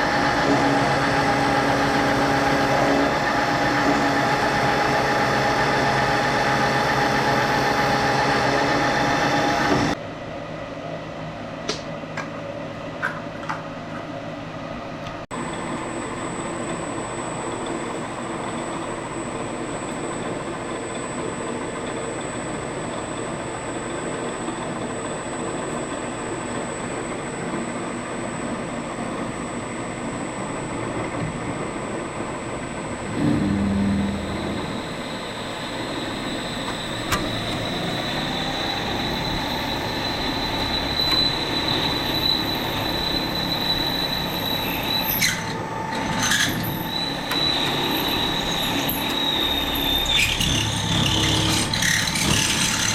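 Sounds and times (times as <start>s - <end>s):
machine whine: 0.0s - 10.0s, 15.3s - 52.9s
short low hum: 30.8s - 38.0s
machine tool cutting metal: 33.0s - 52.9s.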